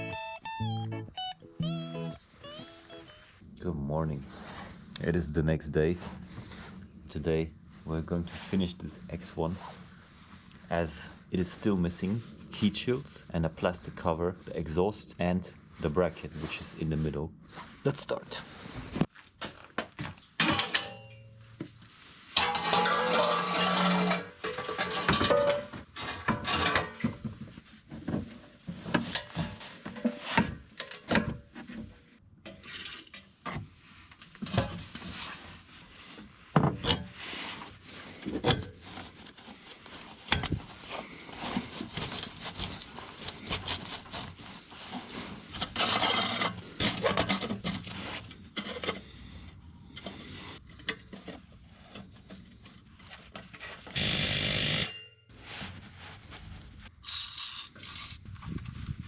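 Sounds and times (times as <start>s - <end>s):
hand tools and metal parts clinking: 20.3s - 27.4s, 28.5s - 31.6s, 38.1s - 55.1s, 57.0s - 58.3s.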